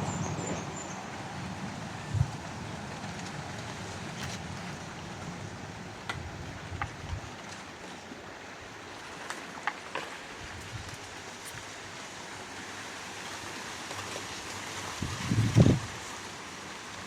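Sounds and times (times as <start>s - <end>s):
wind buffeting microphone: 0.0s - 7.4s, 15.0s - 16.0s
wind rustling leaves: 0.0s - 17.0s
faint crackles: 2.1s - 8.1s.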